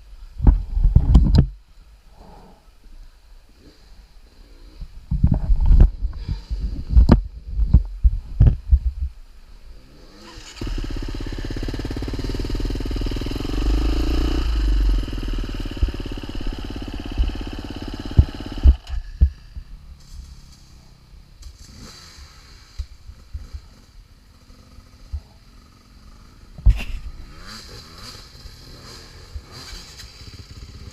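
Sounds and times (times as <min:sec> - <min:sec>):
motorcycle engine running: 0:09.8 - 0:30.9.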